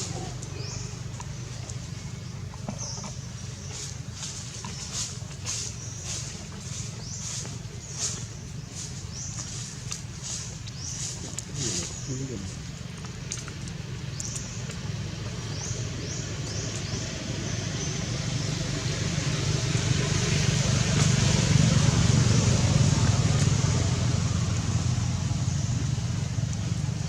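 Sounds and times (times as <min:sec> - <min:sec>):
vehicle engine passing by: 0:00.0 - 0:27.0.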